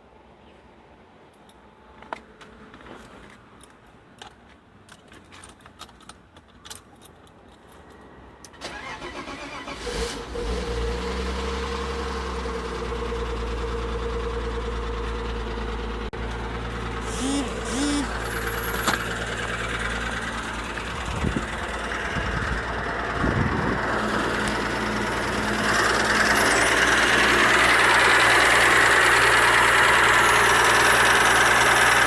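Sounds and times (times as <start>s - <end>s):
light clicks and rattles: 1.3s - 8.1s
car engine cranking and idling: 5.0s - 32.0s
steady high tone: 17.0s - 18.8s.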